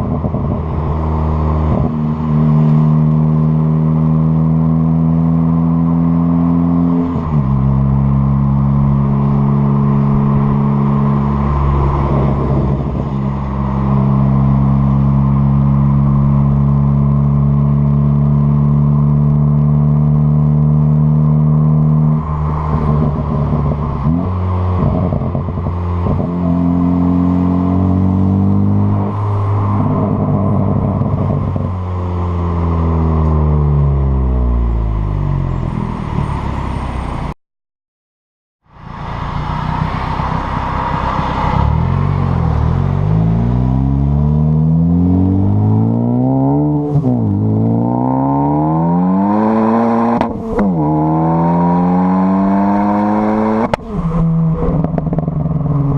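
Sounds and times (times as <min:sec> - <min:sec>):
car exhaust at steady revs: 0:00.0 - 0:35.4, 0:39.0 - 0:55.9
exhaust crackling: 0:52.0 - 0:55.9.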